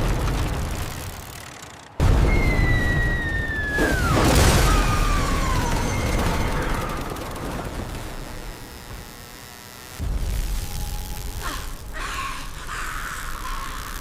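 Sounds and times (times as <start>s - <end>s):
explosion boom with rumble: 2.0s - 8.2s
descending cartoon whistle: 2.2s - 6.6s.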